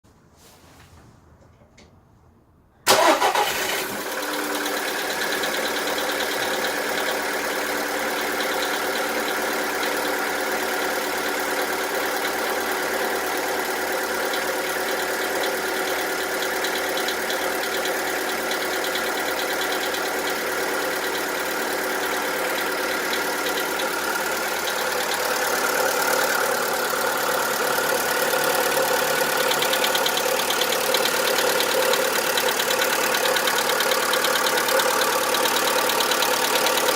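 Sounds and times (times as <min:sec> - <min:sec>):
car engine starting: 0:02.9 - 0:09.4, 0:13.8 - 0:36.9
engine idling with knock: 0:14.2 - 0:36.9.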